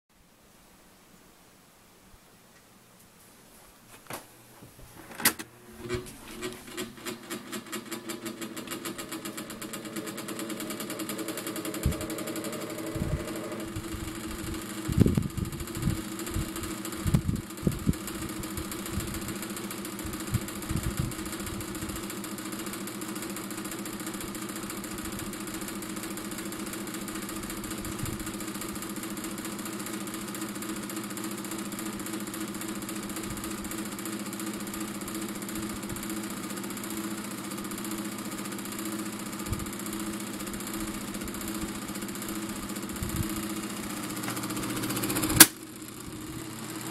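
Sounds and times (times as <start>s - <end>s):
table fan motor hum: 4.9s - 46.9s
fan bearing rattle: 5.1s - 22.6s
fan switch click: 45.2s - 45.6s.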